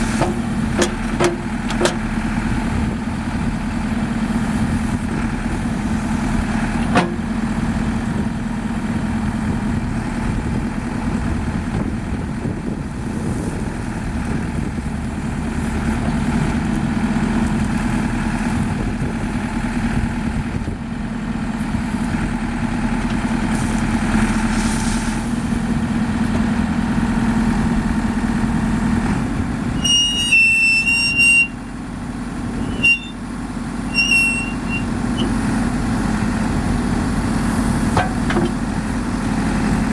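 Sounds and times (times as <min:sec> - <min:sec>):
diesel engine idling: 0:00.0 - 0:39.9
high-pitched electronic beep: 0:32.6 - 0:33.2
short electronic chirps: 0:32.6 - 0:33.2.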